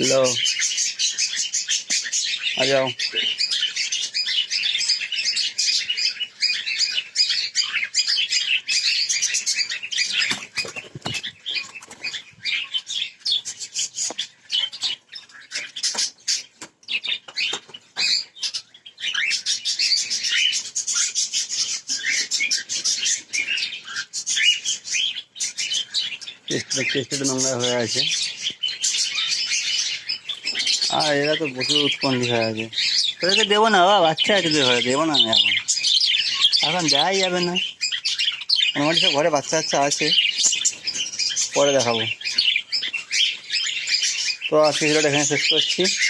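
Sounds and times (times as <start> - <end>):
cockatiels chirping and calling: 0.0 - 46.0
wings flapping and rustling: 9.3 - 12.5.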